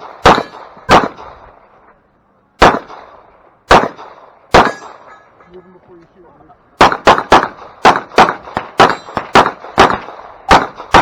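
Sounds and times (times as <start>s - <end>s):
pistol shots: 0.0s - 1.6s, 2.6s - 5.2s, 6.8s - 11.0s.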